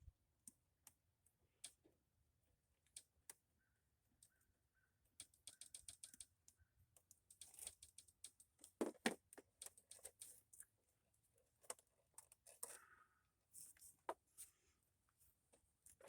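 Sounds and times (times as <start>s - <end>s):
small metal tools clicking: 5.2s - 8.8s.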